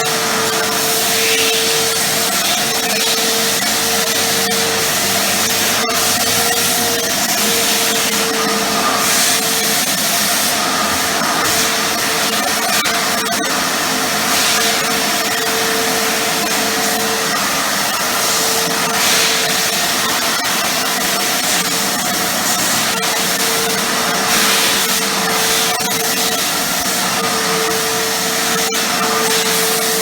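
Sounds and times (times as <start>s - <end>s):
vacuum cleaner motor hum: 0.0s - 30.0s
air hissing at nozzle: 1.0s - 2.2s.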